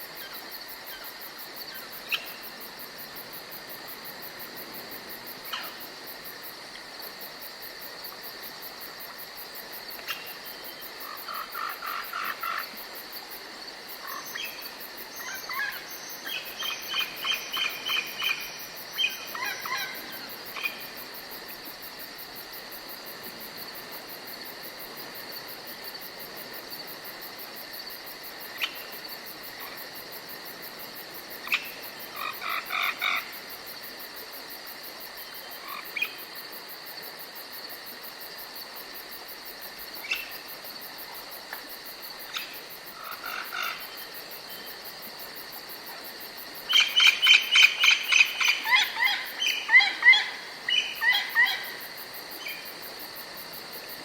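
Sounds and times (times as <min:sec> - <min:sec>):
insects chirring: 0:00.0 - 0:54.0
frogs calling: 0:05.3 - 0:06.0, 0:10.0 - 0:12.8, 0:14.0 - 0:21.1, 0:31.4 - 0:33.5, 0:40.0 - 0:40.5, 0:42.2 - 0:44.7, 0:46.0 - 0:52.9.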